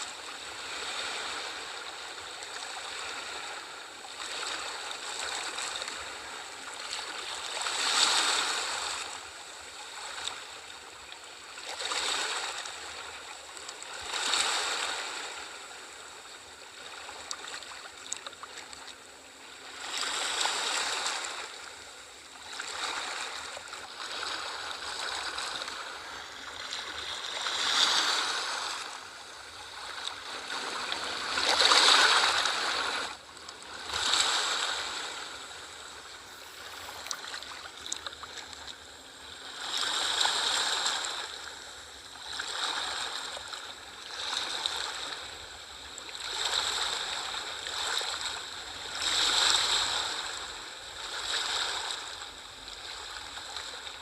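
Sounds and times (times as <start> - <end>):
sea waves washing: 22.6 - 41.7.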